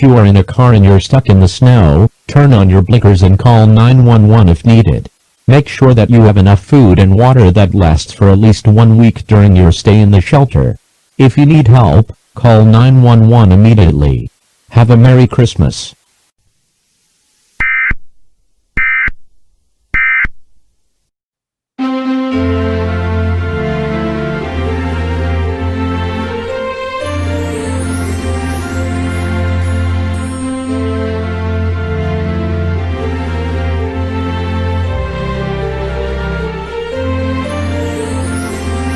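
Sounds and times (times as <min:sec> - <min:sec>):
music: 0:21.8 - 0:38.9.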